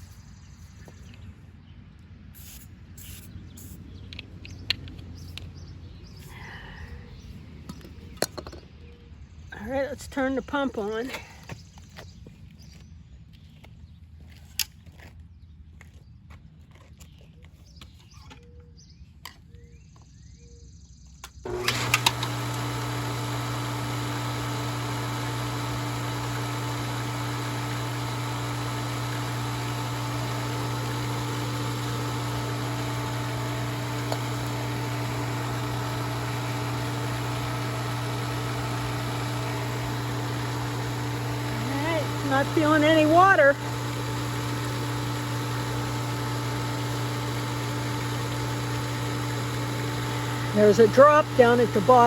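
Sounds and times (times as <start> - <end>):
pool pump motor humming: 21.3 - 52.0.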